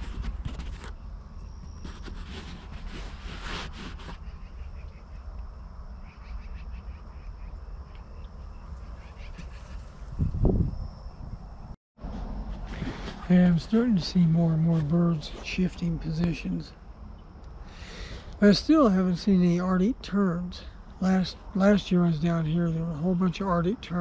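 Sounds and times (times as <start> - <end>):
rustles: 0.0 - 5.5, 6.1 - 10.4, 12.0 - 16.6
faint distant calls: 4.0 - 11.2.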